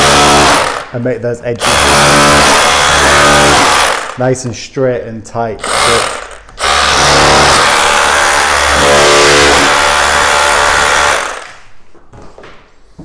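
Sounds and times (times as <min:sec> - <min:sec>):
rotary hammer chiselling brick: 0:00.0 - 0:00.8, 0:05.6 - 0:11.5.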